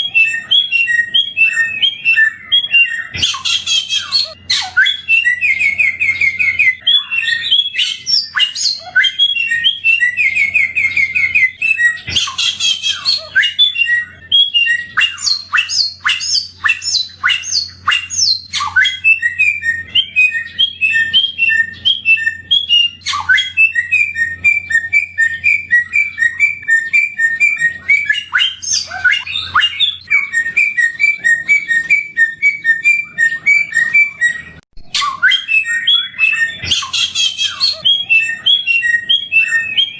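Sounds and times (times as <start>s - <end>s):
songbird singing trills: 0.0s - 39.9s.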